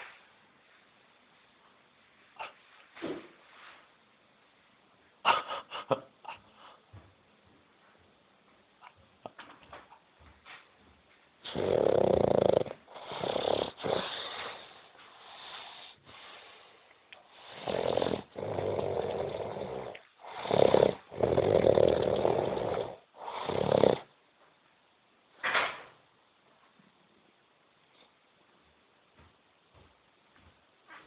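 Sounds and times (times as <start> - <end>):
man snoring heavily: 11.5 - 14.3, 17.4 - 24.1.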